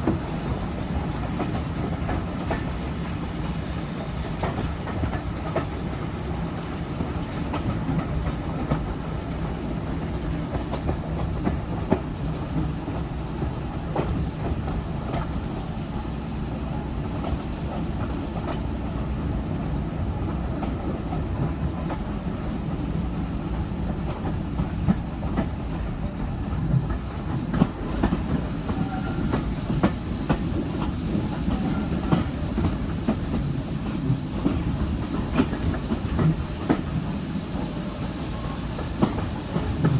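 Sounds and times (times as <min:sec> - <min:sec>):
low rumble of running train: 0:00.0 - 0:39.9
steam hiss: 0:00.0 - 0:39.9
wheels clicking over rail joints: 0:16.7 - 0:39.9.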